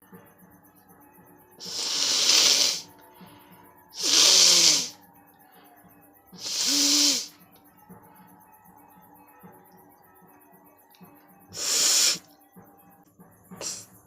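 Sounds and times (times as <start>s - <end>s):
person blowing nose: 1.6s - 2.9s, 4.0s - 4.9s, 6.4s - 7.3s, 11.6s - 12.2s.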